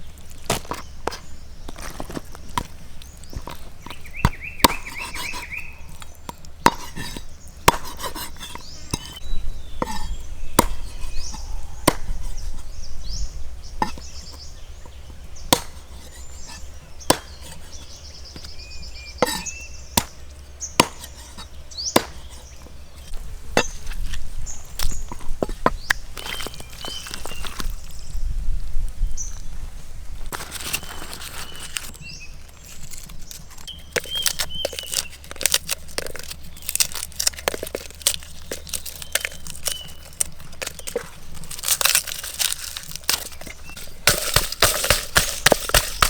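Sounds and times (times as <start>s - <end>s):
birds chirping: 0.0s - 46.0s
knife chopping on wooden board: 3.4s - 5.6s, 6.6s - 9.2s, 9.8s - 12.4s, 15.5s - 18.5s, 19.2s - 20.2s, 20.8s - 22.5s, 40.6s - 46.0s.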